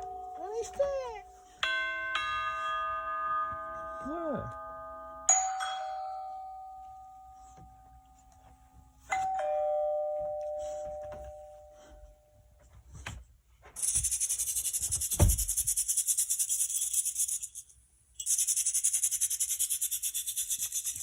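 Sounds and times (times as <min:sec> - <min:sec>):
two-tone doorbell chime: 0:00.0 - 0:12.5.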